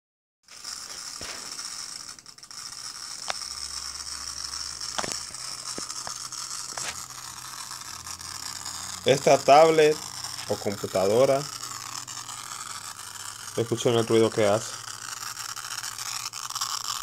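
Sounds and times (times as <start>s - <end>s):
high-pitched hiss: 0.5s - 17.0s.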